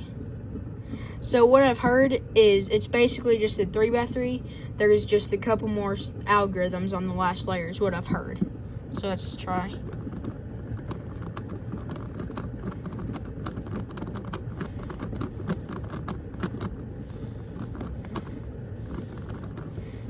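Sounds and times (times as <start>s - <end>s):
plastic puzzle clicking: 9.8s - 16.9s, 17.5s - 19.8s.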